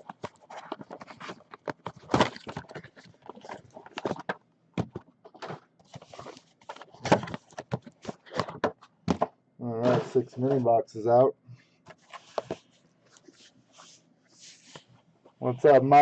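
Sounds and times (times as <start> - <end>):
cardboard scraping slide: 13.2 - 14.9.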